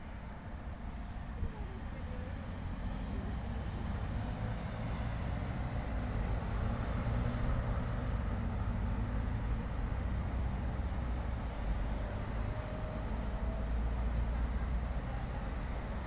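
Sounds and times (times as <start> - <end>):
general city noise: 0.0 - 16.0
rumble of passing vehicles: 0.0 - 16.0.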